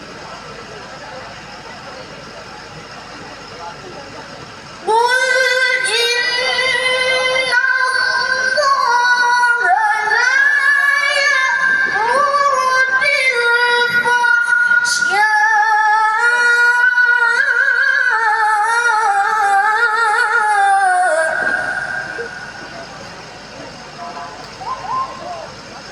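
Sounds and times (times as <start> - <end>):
woman chanting melodically: 4.8 - 23.0.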